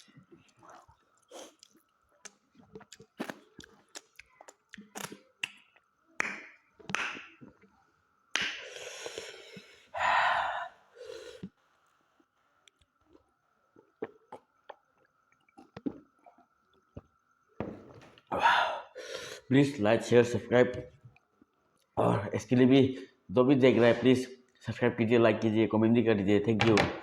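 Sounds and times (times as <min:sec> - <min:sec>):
mouth clicks and smacks chewing: 0:00.0 - 0:05.9.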